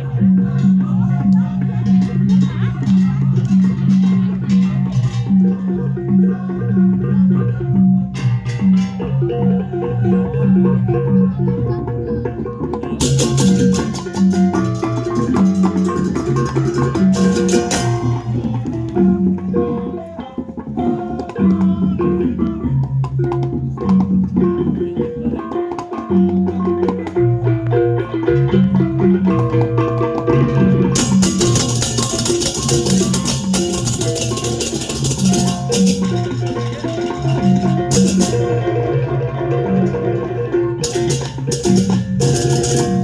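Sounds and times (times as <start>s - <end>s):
tuned gongs and drums: 0.0s - 43.0s
clashing cymbals: 31.0s - 38.6s.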